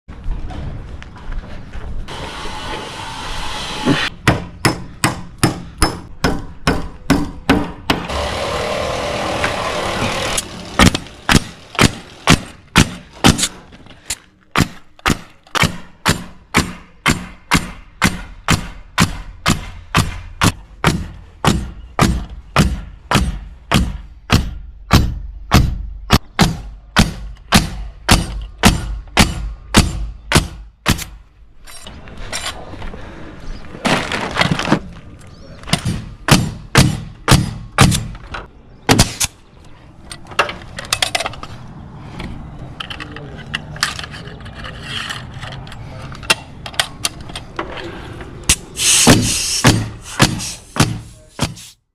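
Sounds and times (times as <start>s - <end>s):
hammer driving nails: 3.8s - 31.2s, 35.7s - 38.2s, 48.5s - 51.8s
steady rasping noise: 47.8s - 51.8s.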